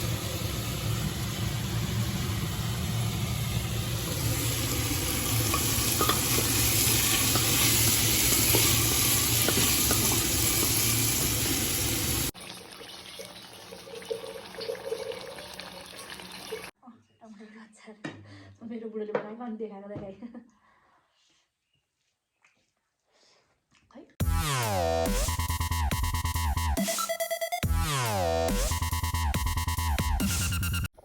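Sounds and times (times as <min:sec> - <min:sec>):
food sizzling in a hot pan: 0:00.0 - 0:12.4
faint kitchen sounds: 0:00.0 - 0:20.2
clinks: 0:05.5 - 0:06.6.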